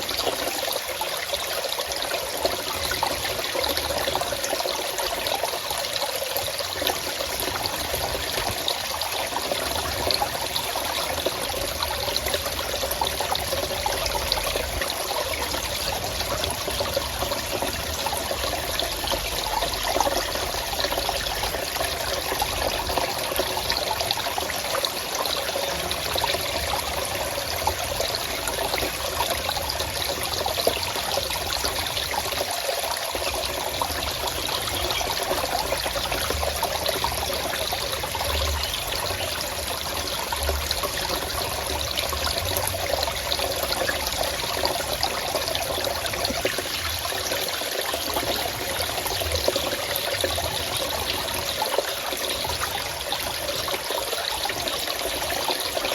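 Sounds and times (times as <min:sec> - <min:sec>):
stream water flowing: 0:00.0 - 0:55.9.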